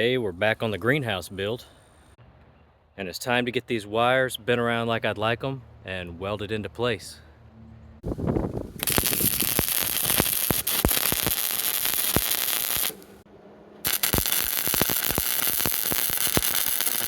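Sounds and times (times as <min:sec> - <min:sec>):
welding arc crackling: 0:08.8 - 0:13.2, 0:13.8 - 0:17.0.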